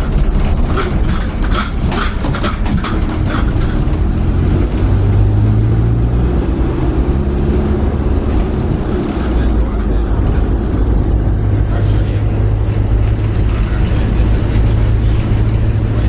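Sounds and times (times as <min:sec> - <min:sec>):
clattering and rattling: 0:00.0 - 0:16.0
vehicle engine rumbling: 0:00.0 - 0:16.0.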